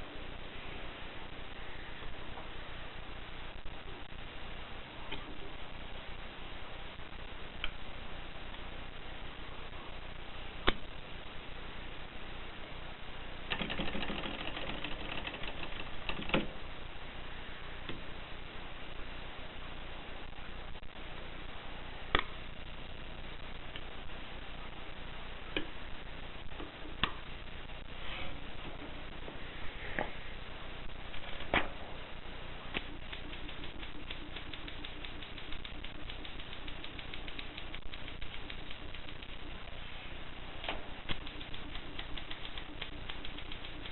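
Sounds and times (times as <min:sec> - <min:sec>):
manual typewriter typing: 0:13.5 - 0:16.5, 0:32.9 - 0:39.4, 0:41.1 - 0:43.9
typewriter mechanism clicking: 0:13.5 - 0:16.5.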